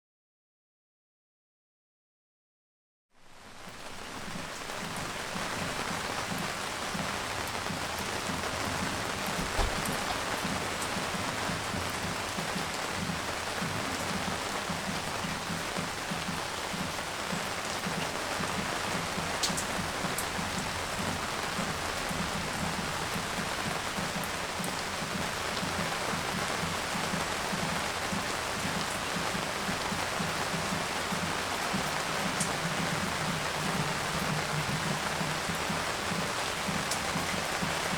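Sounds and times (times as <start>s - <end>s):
rain pattering on garden: 3.3s - 37.9s
low thump: 9.4s - 10.0s.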